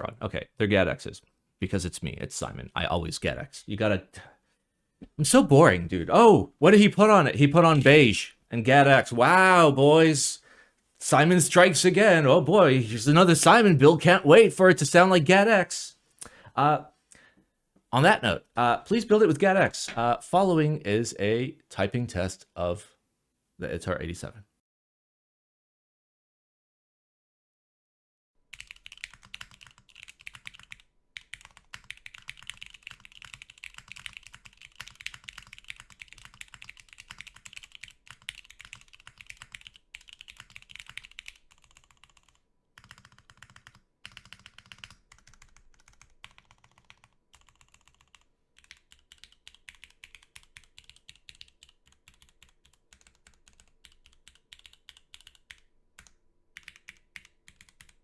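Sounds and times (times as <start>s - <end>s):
mechanical keyboard typing: 28.5s - 58.0s.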